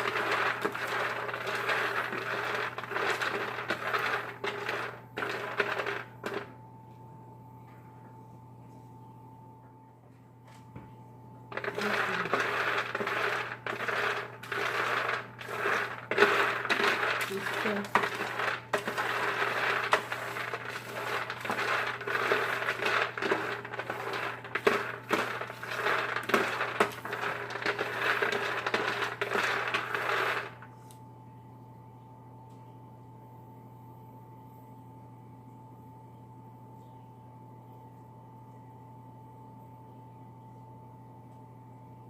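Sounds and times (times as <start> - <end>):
peanuts rattling in a baking pan: 0.0 - 6.4, 11.5 - 30.6.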